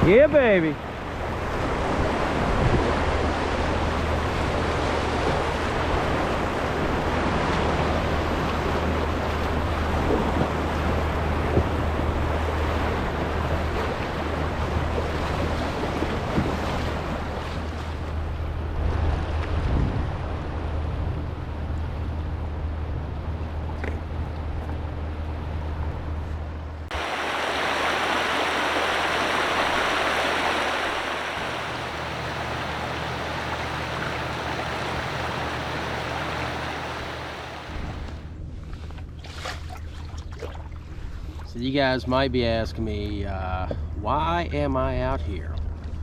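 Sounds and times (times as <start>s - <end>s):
river water rushing: 26.9s - 38.2s.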